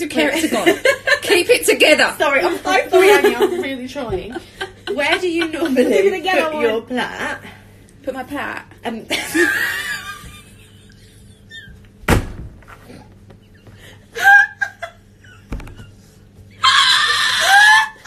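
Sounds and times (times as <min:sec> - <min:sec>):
low thud: 0:12.0 - 0:12.7
high-pitched squealing laughter: 0:14.2 - 0:15.0, 0:16.6 - 0:18.0.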